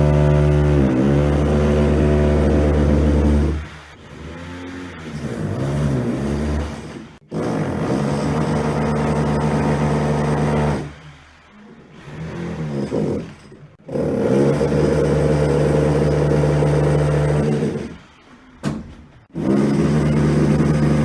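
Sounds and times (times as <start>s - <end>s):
power tool motor running: 19.4s - 21.0s.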